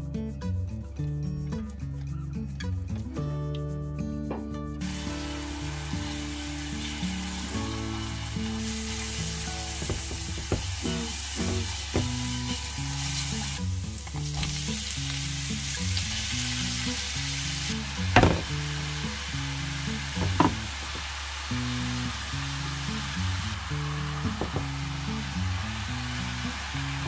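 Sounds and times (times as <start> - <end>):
sizzling hiss: 4.8 - 27.0
loud knocks: 18.2 - 18.6, 20.2 - 20.7, 24.2 - 24.7.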